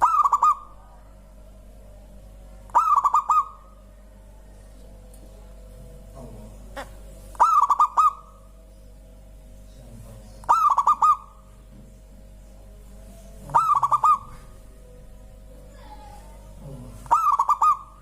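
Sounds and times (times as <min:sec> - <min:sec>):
dove cooing: 0:00.0 - 0:00.8, 0:02.7 - 0:04.5, 0:06.4 - 0:08.6, 0:10.4 - 0:11.5, 0:13.2 - 0:14.7, 0:15.6 - 0:18.0.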